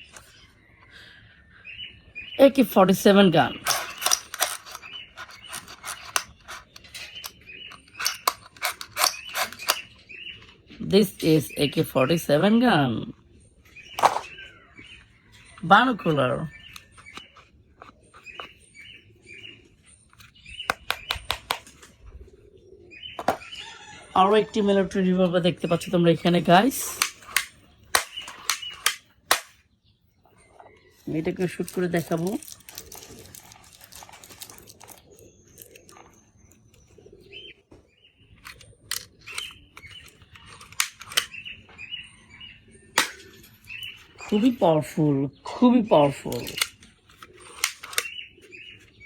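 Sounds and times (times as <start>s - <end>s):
small birds chirping: 0.0s - 49.0s
sharp clicks: 3.6s - 10.0s, 26.9s - 29.6s, 38.4s - 41.5s, 46.3s - 48.2s
toy revolver clicks: 27.0s - 29.5s.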